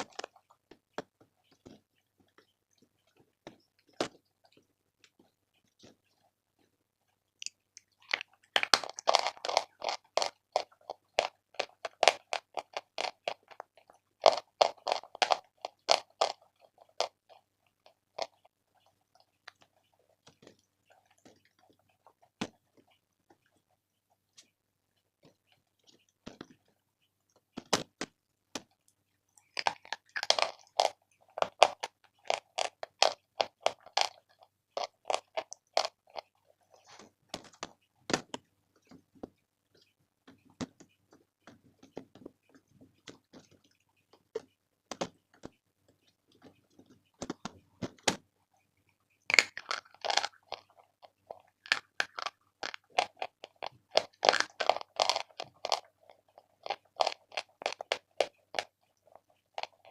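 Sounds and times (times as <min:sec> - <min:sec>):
soft chewing: 0:00.0 - 0:59.9
crunching chalk: 0:07.4 - 0:23.6, 0:27.4 - 0:39.4, 0:49.3 - 0:59.9.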